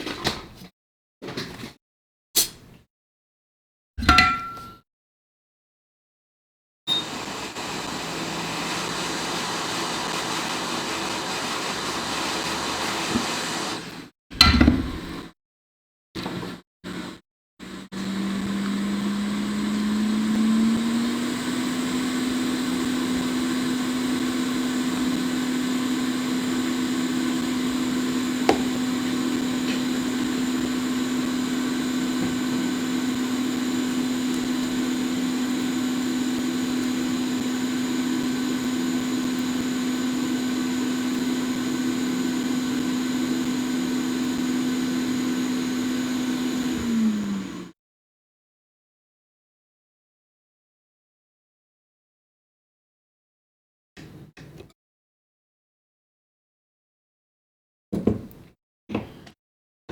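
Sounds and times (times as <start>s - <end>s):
hot air blower humming: 6.9s - 14.0s, 17.7s - 47.7s.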